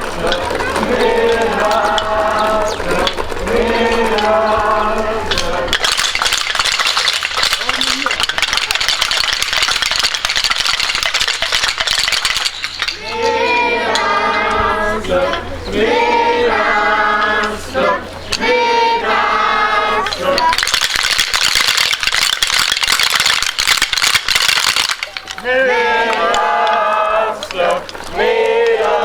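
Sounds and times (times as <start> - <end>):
wooden clappers clattering: 0.0 - 15.6, 19.9 - 29.0
group chanting in unison: 0.2 - 5.8, 13.0 - 20.5, 25.4 - 29.0.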